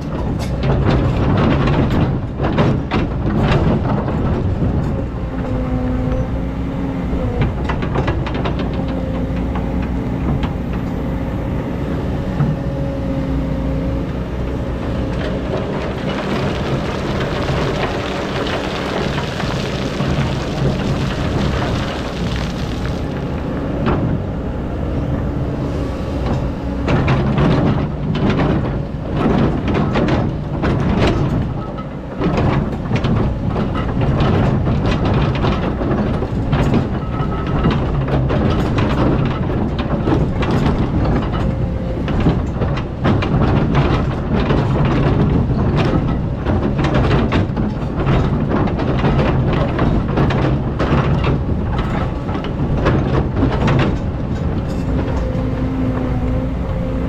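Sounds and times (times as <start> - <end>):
metal clanks and rattles: 0.0 - 5.2, 26.2 - 56.8
excavator engine running: 0.0 - 57.0.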